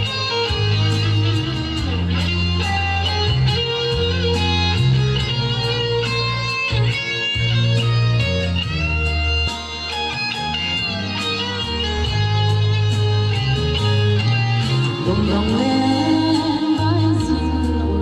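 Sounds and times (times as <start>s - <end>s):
guitar-led music with bass and drums: 0.0s - 18.0s.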